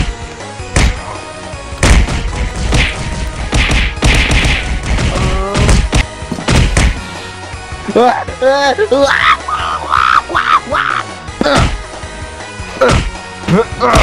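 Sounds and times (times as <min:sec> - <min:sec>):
fight thuds and whacks: 0:00.0 - 0:01.0, 0:01.8 - 0:07.0, 0:11.4 - 0:11.8, 0:12.8 - 0:13.2
background music: 0:00.0 - 0:14.0.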